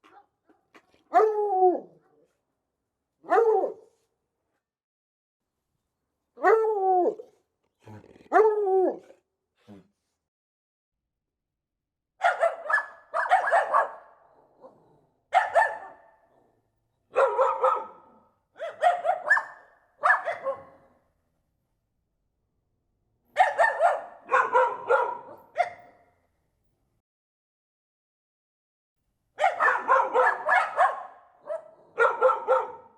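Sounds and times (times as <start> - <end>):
dog barking: 0.0 - 2.3, 3.2 - 4.0, 12.2 - 16.5, 17.1 - 21.0, 23.3 - 26.2, 29.4 - 32.9.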